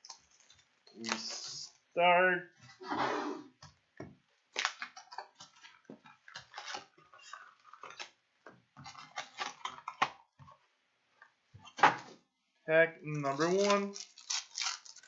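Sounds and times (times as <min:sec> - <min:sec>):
plastic wrap crinkling and tearing: 0:00.0 - 0:01.6, 0:04.5 - 0:08.2, 0:08.8 - 0:10.2, 0:13.3 - 0:15.0.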